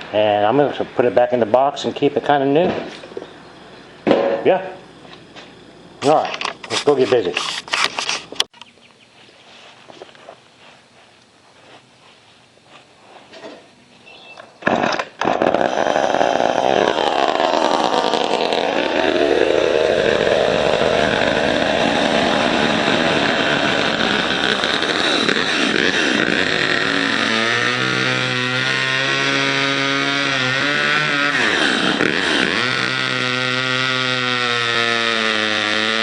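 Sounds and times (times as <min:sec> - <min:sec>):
chainsaw engine running: 0:14.7 - 0:36.0.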